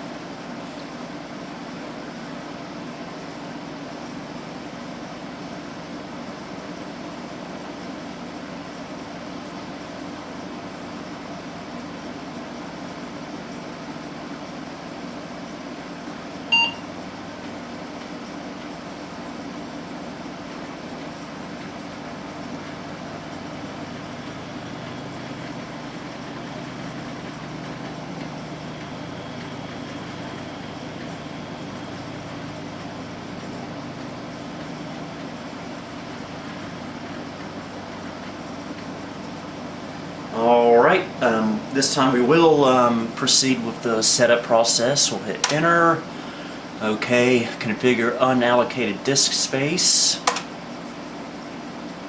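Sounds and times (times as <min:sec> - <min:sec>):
computer fan hum: 0:00.0 - 0:52.0
computer speaker beep: 0:16.5 - 0:16.9.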